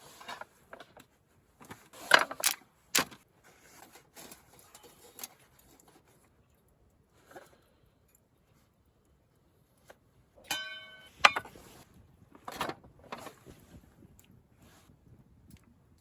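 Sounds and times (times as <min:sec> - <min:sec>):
scraping and rustling handling: 0:00.0 - 0:07.8
metal clink: 0:10.4 - 0:11.6.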